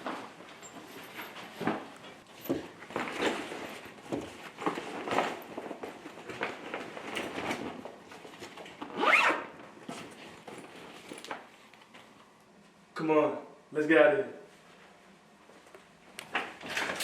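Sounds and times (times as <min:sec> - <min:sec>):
zipper being pulled: 0:08.9 - 0:09.6.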